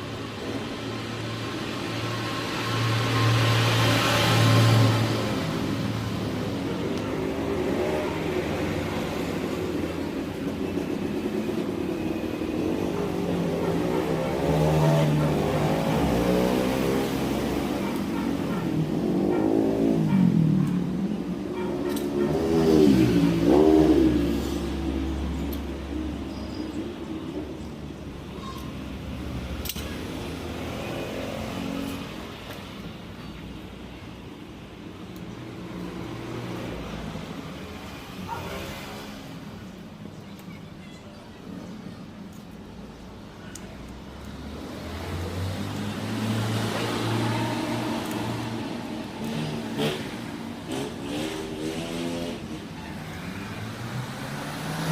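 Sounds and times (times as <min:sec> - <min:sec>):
motorcycle engine revving: 0:11.0 - 0:21.0, 0:21.8 - 0:25.2, 0:44.5 - 0:52.7.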